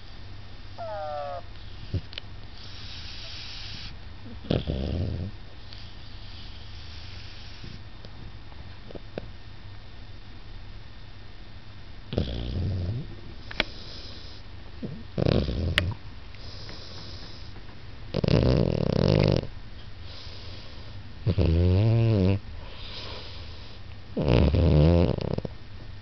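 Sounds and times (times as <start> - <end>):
soft hissing breaths: 0.0 - 9.2, 12.1 - 25.5
hedgehog snoring: 0.8 - 5.4, 12.1 - 17.5, 18.1 - 19.5, 21.2 - 23.4, 24.2 - 25.5.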